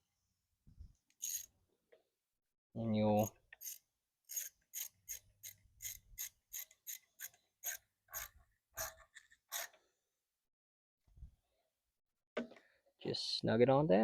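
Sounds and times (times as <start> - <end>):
hand ratchet clicking: 3.2 - 9.7.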